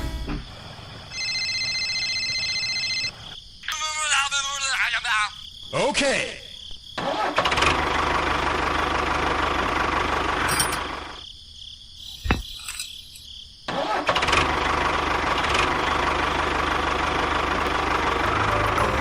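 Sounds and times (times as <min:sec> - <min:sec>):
small tractor engine running: 0:07.3 - 0:11.2, 0:14.0 - 0:19.0.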